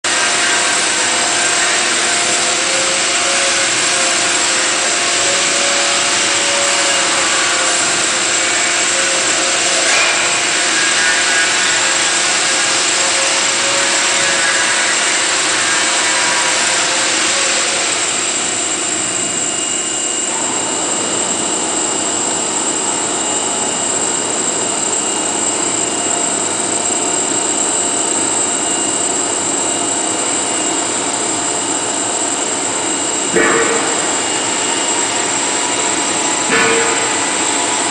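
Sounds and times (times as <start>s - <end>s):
router spindle whine: 0.0s - 37.9s
cutting hiss: 0.1s - 18.2s.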